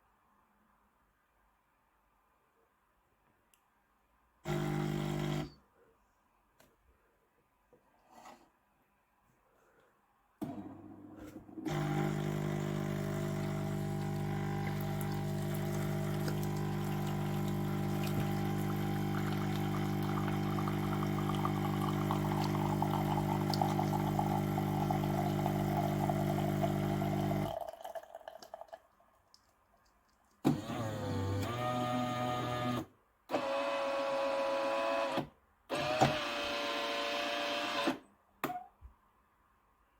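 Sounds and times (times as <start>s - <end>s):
coffee machine pump humming: 4.5s - 5.5s, 11.6s - 28.2s, 30.4s - 32.9s.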